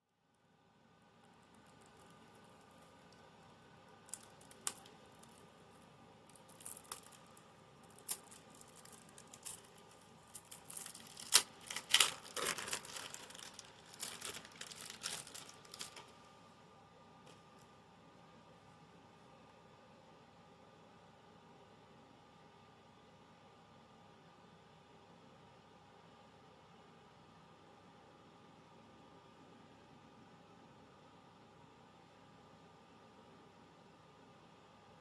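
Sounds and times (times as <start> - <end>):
plastic wrapping crinkling: 4.1 - 5.4, 6.3 - 16.3.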